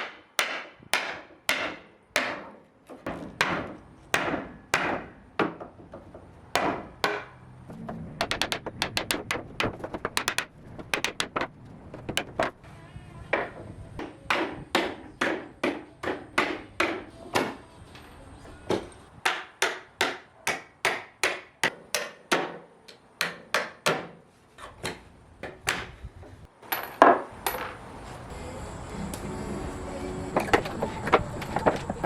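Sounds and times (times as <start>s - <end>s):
hammer striking wooden boards: 0.0s - 7.4s, 8.2s - 12.6s, 13.4s - 17.6s, 19.2s - 24.2s, 24.8s - 25.9s.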